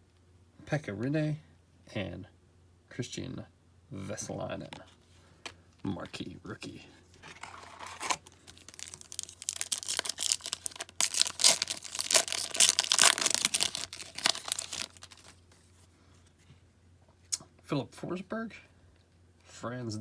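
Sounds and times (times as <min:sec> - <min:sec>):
cards being handled: 0:07.2 - 0:15.7
wrapper tearing and crinkling: 0:07.3 - 0:15.5.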